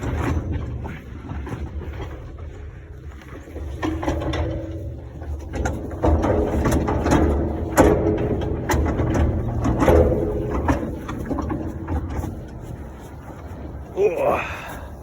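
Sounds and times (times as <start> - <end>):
metal tank clanking and bumping: 3.5 - 13.9.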